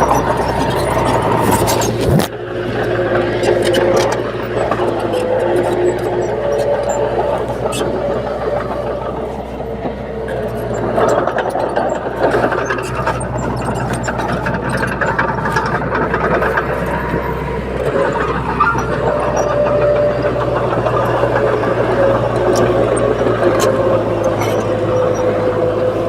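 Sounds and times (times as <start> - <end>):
bulldozer diesel engine running: 0.0 - 26.0
short clicks and clatter: 0.0 - 26.0.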